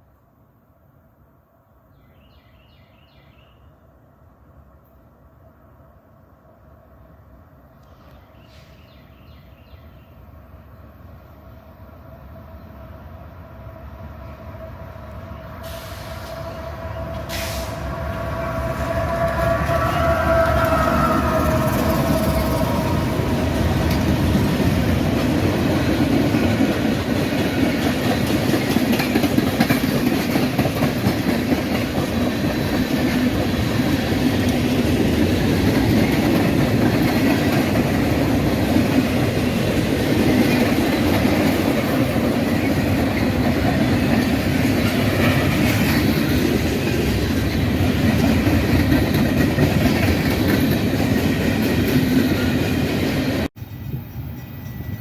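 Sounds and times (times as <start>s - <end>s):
train horn blast: 17.1s - 23.3s
freight train wheels clattering: 18.8s - 53.5s.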